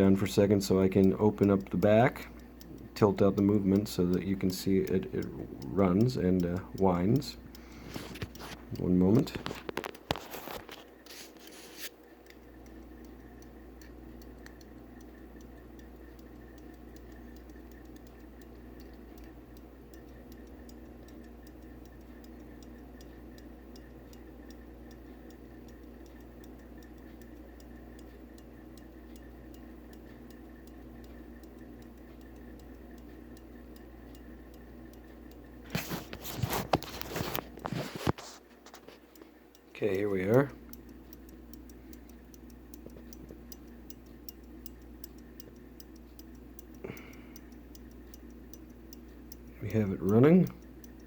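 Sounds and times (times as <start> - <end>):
pocket watch ticking: 0.0 - 51.0.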